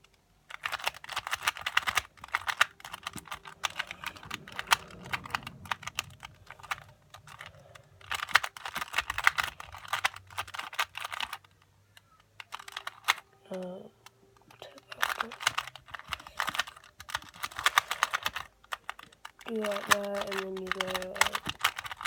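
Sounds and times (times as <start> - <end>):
puzzle cube clacking: 0.0 - 22.0.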